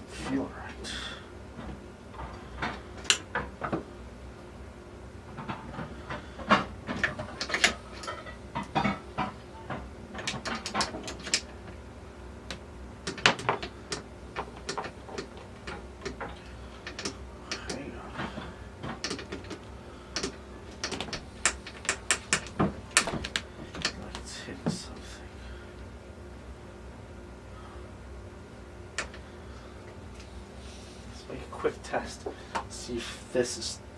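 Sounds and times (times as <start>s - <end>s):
metal parts clicking and knocking: 6.9s - 9.0s, 10.2s - 11.5s, 13.1s - 24.1s.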